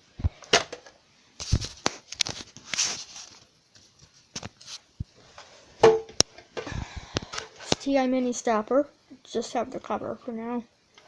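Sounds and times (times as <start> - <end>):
rustling: 1.4 - 5.7.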